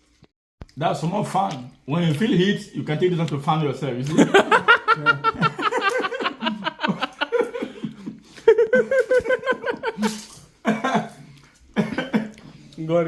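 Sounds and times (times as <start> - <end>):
men laughing: 4.0 - 12.4.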